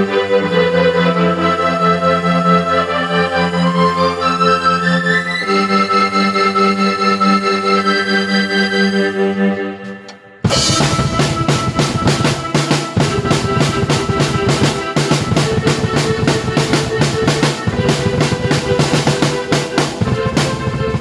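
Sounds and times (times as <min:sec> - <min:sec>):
keyboard chords: 0:09.1 - 0:21.0
fast drum beat: 0:10.5 - 0:21.0.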